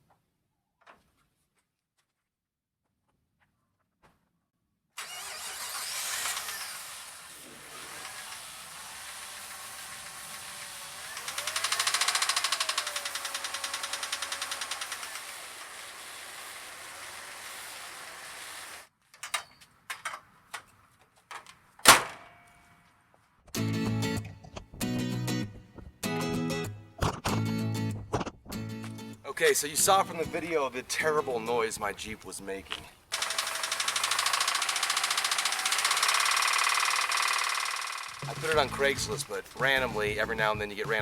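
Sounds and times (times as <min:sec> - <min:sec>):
engine clicks: 0:11.1 - 0:15.3, 0:32.7 - 0:39.8
car engine knocking: 0:11.4 - 0:15.0, 0:33.2 - 0:39.2.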